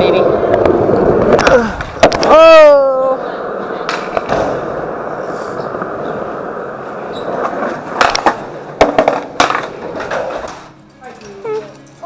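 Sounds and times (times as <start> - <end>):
skateboard clacks: 0.0 - 2.7, 3.4 - 10.7
skateboard wheels rolling on pavement: 0.0 - 10.8.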